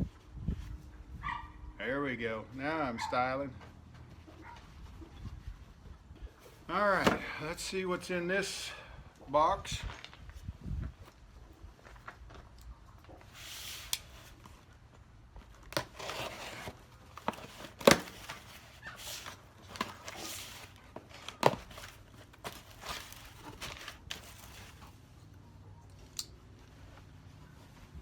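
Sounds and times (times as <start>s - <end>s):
packing material rustling: 15.4s - 25.0s
tape and cardboard tearing: 15.5s - 24.9s.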